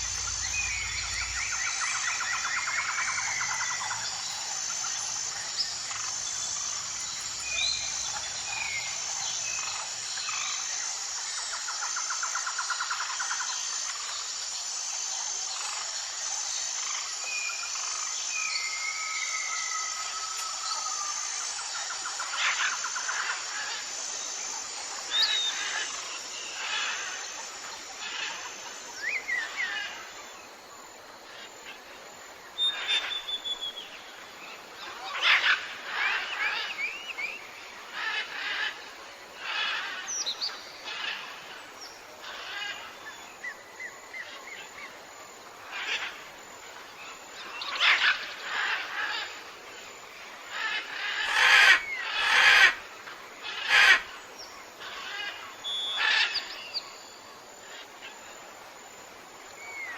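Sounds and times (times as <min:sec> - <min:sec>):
birds chirping and whistling: 0:00.0 - 0:09.8.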